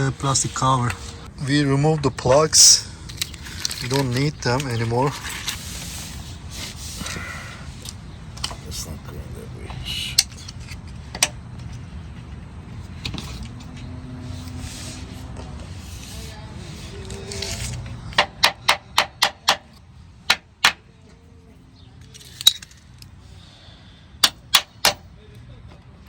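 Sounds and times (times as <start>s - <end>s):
soft handling and rustling: 2.0s - 18.1s
metal tools clinking: 3.1s - 5.8s, 22.0s - 23.2s.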